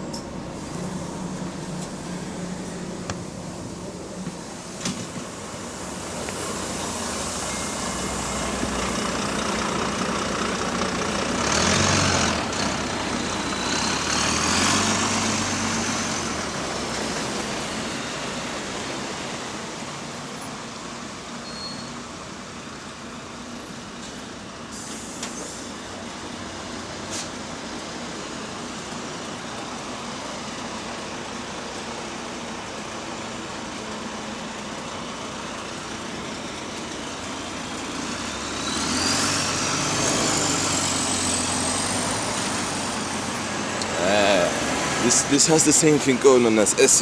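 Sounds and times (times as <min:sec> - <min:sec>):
bus diesel engine pulling away: 0:00.0 - 0:47.0.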